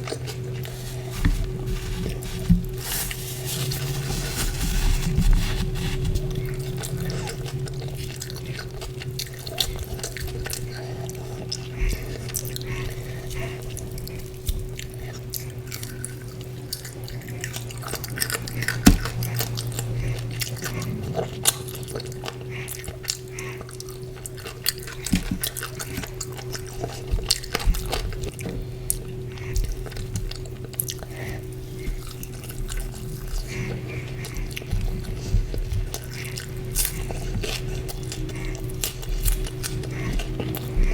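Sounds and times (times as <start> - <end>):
wet chewing and smacking: 0.0 - 4.1, 5.6 - 40.9
steady low hum: 0.0 - 40.9.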